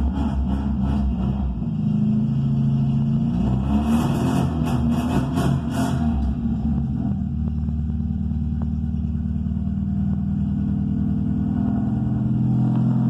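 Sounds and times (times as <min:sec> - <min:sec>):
car engine rumbling at idle: 0:06.0 - 0:13.0.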